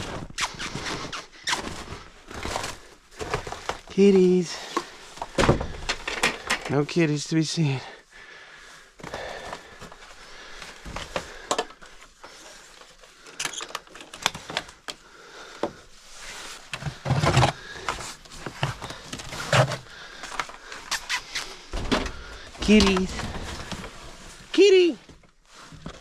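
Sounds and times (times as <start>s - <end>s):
handling knocks and clicks: 4.7s - 6.8s.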